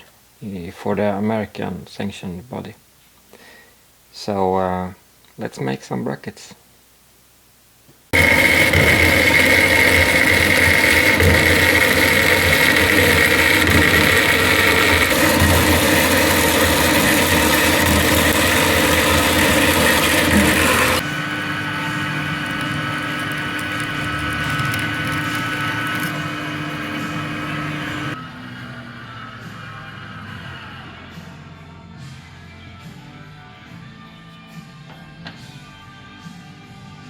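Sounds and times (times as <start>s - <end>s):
machine running: 8.1s - 29.0s.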